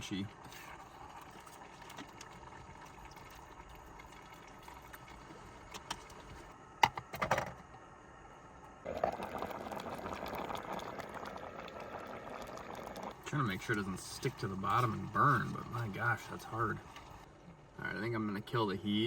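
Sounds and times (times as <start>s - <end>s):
pot bubbling: 0.0s - 17.8s
stirring thick rice mixture: 13.6s - 17.2s.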